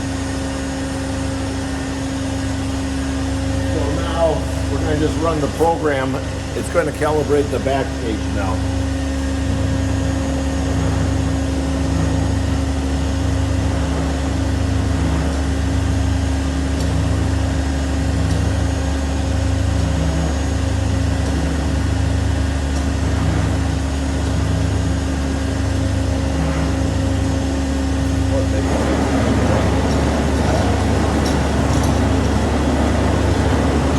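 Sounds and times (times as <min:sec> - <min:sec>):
low pulsing: 0:28.4 - 0:33.9
electric motor hum: 0:28.5 - 0:33.9.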